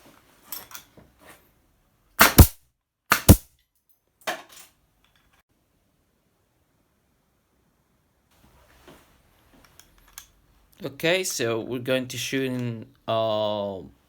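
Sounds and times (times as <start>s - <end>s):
nail gun shots: 2.2s - 3.4s.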